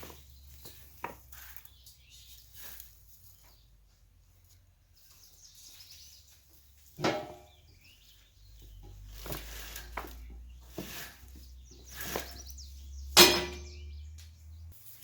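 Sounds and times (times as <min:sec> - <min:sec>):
birds chirping: 0:00.0 - 0:15.0.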